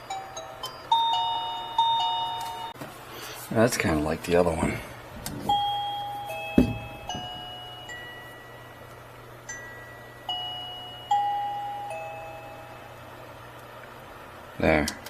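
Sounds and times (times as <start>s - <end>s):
doorbell chime tune: 0.0s - 2.8s, 5.4s - 8.8s, 9.4s - 13.0s.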